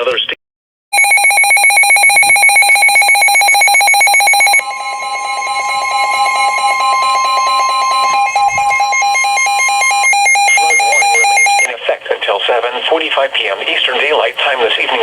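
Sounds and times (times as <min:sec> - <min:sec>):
rapid electronic beeping alarm: 0:00.9 - 0:11.7
steady high warning tone: 0:01.0 - 0:11.7.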